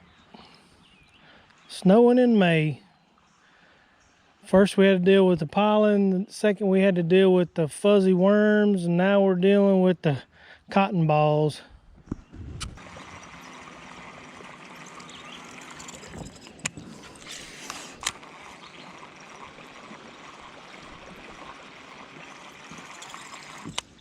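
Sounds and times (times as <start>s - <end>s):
water trickling and gurgling: 12.8s - 24.0s.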